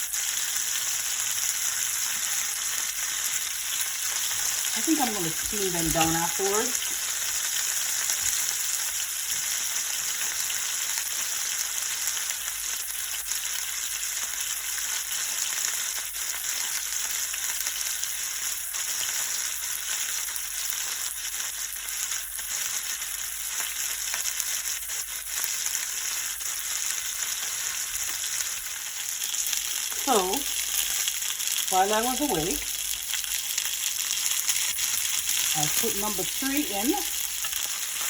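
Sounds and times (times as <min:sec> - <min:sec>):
oil crackling: 0:00.0 - 0:12.6, 0:21.9 - 0:38.0
fish sizzling in hot oil: 0:00.0 - 0:38.0.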